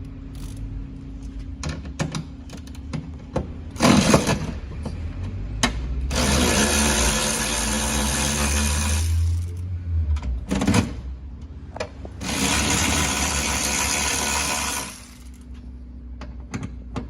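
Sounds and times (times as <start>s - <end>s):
power tool burst: 6.1s - 9.5s, 12.2s - 15.4s
power tool motor whir: 6.1s - 9.6s, 12.2s - 15.4s.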